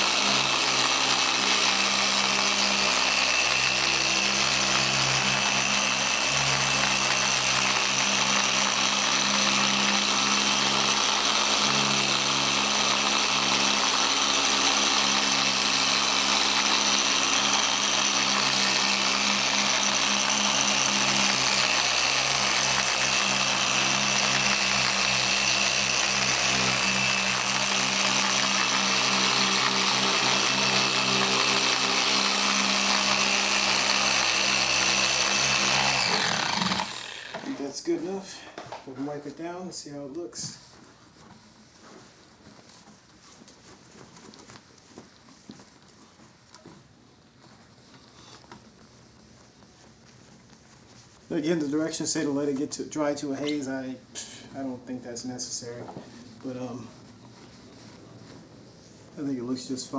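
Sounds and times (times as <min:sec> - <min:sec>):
electric polisher buffing metal: 0:00.0 - 0:39.3.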